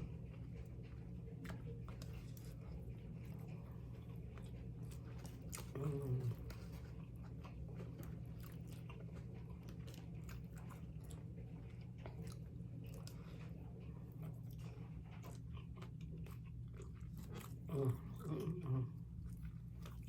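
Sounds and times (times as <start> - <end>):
person chewing food: 0.0 - 20.0
steady low hum: 0.0 - 20.0.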